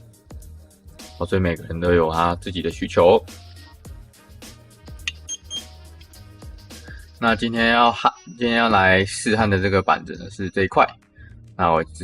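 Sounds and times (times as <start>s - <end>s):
background music with bass line: 0.0s - 12.0s
brief high-pitched beeps: 5.1s - 5.7s.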